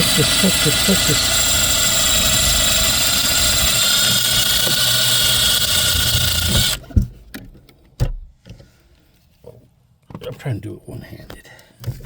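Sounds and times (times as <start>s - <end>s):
power tool whining: 0.0s - 6.9s.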